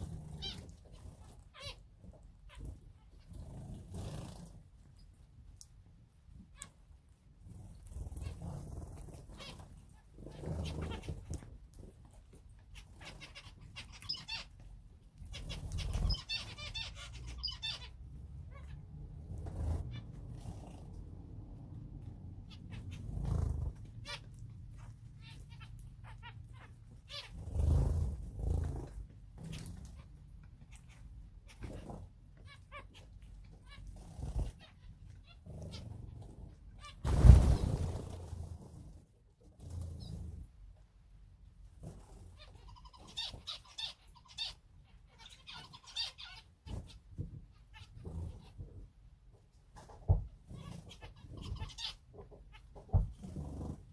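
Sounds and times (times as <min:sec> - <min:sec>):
small birds chirping: 0:00.0 - 0:21.1, 0:22.0 - 0:38.7, 0:39.6 - 0:40.4, 0:42.0 - 0:48.7, 0:49.8 - 0:53.9
finches chirping: 0:12.6 - 0:14.6, 0:15.2 - 0:18.8, 0:50.5 - 0:52.0.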